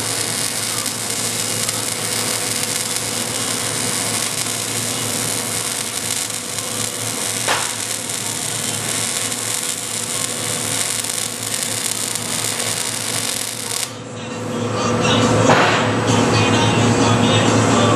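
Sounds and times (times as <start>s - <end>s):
arc welding crackling hiss: 0.0s - 14.0s.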